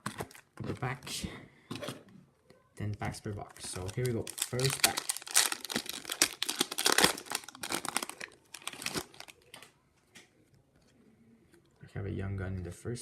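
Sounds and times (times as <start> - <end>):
card pack wrapper crinkling: 3.5 - 9.6.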